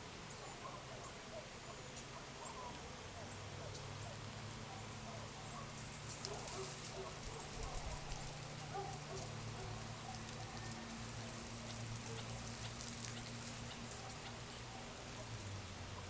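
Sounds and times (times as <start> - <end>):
faint ticks and crackles: 3.6 - 16.0.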